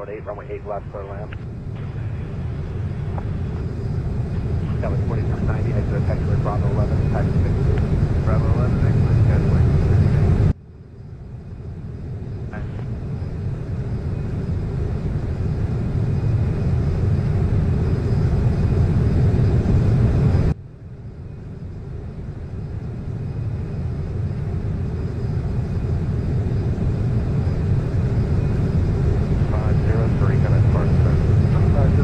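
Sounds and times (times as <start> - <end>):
jet aircraft engines rumbling: 0.0 - 32.0.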